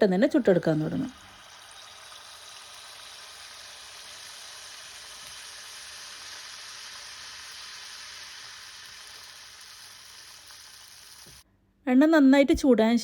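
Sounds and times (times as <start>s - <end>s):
hot oil sizzling in a frying pan: 0.0s - 11.4s.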